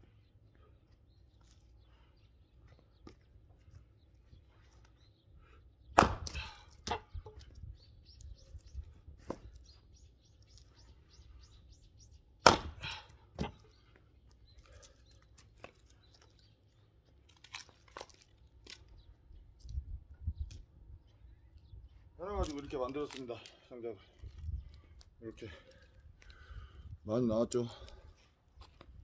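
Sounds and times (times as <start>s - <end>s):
axe splitting logs: 5.9s - 7.5s, 9.2s - 9.6s, 12.4s - 13.8s
split wood pieces falling: 6.0s - 7.5s, 12.4s - 13.8s, 17.2s - 19.0s.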